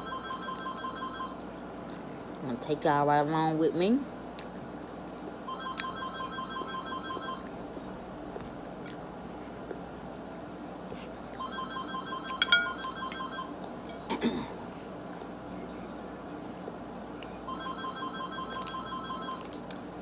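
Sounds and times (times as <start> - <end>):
telephone ringing: 0.0 - 1.4, 5.5 - 7.4, 11.4 - 13.6, 17.5 - 19.5.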